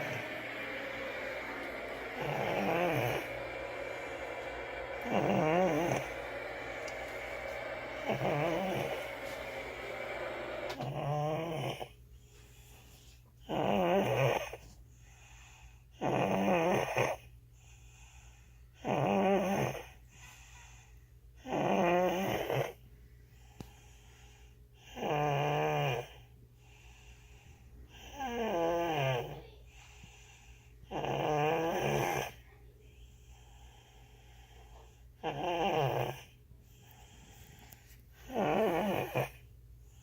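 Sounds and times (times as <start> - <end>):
baby snoring: 0.0 - 11.9, 13.5 - 14.6, 16.0 - 17.3, 18.8 - 20.0, 21.4 - 22.8, 24.9 - 26.2, 27.9 - 29.5, 30.9 - 32.4, 35.2 - 36.4, 38.2 - 39.4.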